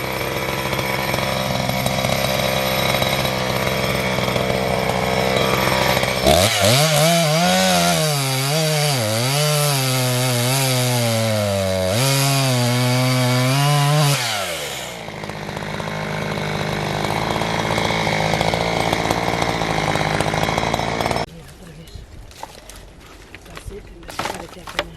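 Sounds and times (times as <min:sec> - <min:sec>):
chainsaw cutting firewood: 0:00.0 - 0:21.4, 0:22.3 - 0:24.9.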